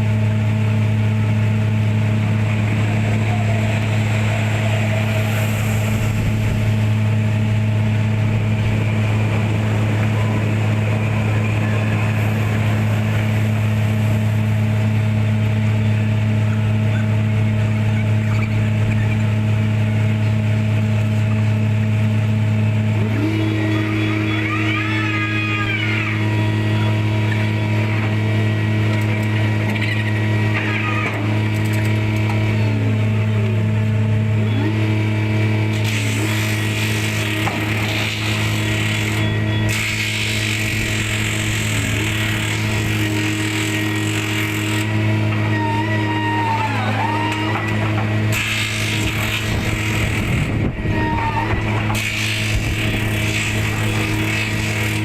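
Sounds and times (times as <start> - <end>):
engine running: 0.0 - 55.0
low hum: 0.0 - 55.0
whining tone: 0.0 - 55.0.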